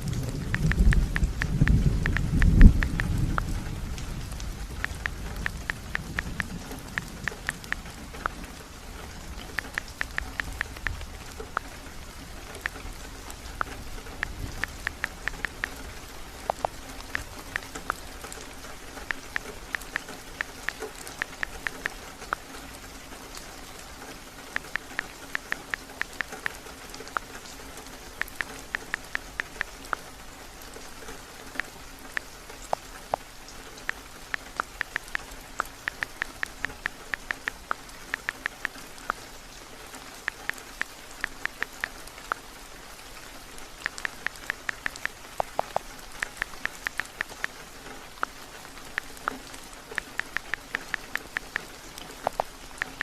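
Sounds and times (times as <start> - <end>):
heavy rain on wooden cabin: 0.0 - 53.0
typing taps on phone keyboard: 0.5 - 3.5, 4.8 - 8.4, 9.4 - 11.7, 13.6 - 15.8, 19.1 - 22.4, 28.2 - 30.0, 33.9 - 38.8, 40.3 - 41.9, 43.8 - 47.5, 50.0 - 53.0.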